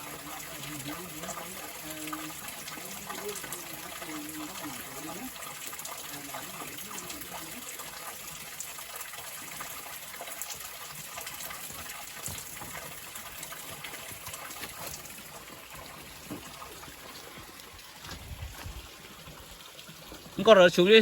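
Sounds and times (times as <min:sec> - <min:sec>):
stream rushing over rocks: 0:00.0 - 0:21.0.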